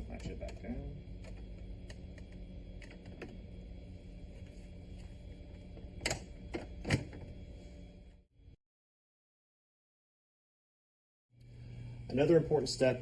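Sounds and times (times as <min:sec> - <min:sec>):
low machine hum: 0:00.0 - 0:08.6, 0:11.4 - 0:13.0.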